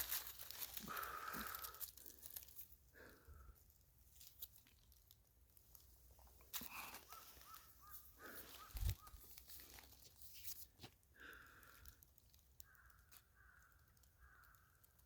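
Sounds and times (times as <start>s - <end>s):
faint crow cawing: 0.1s - 2.4s, 6.6s - 9.8s, 12.6s - 15.0s.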